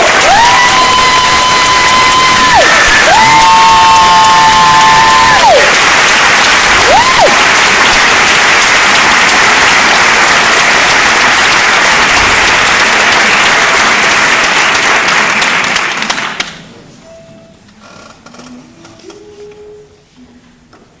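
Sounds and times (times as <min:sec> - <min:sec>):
audience applauding: 0:00.0 - 0:16.6.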